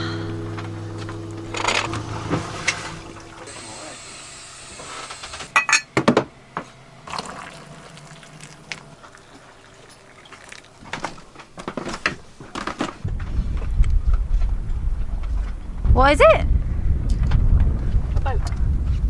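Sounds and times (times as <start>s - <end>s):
low rumble: 0.0s - 3.7s, 13.0s - 19.0s.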